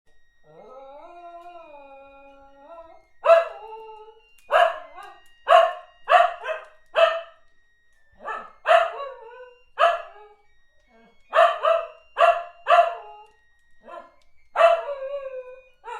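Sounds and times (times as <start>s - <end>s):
dog howling: 0.5s - 7.4s, 8.2s - 10.3s, 10.9s - 15.9s
dog barking: 3.2s - 3.6s, 4.5s - 7.3s, 8.2s - 9.0s, 9.8s - 10.2s, 11.3s - 13.0s, 13.8s - 14.9s.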